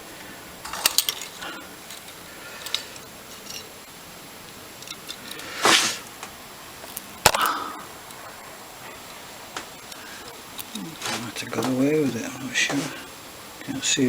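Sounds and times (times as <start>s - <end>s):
metal scrape: 0.6s - 3.7s, 4.8s - 6.1s, 10.8s - 13.1s
metal clicks and knocks of tools: 0.6s - 3.8s, 4.5s - 5.6s.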